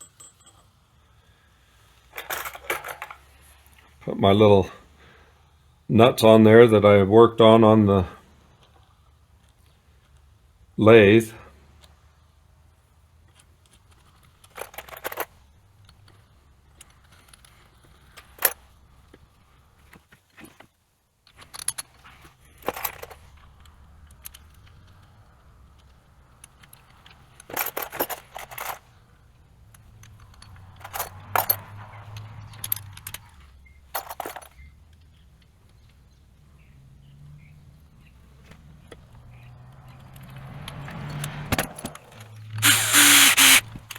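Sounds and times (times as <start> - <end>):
metal nuts clinking: 0.0 - 0.8, 29.7 - 34.6.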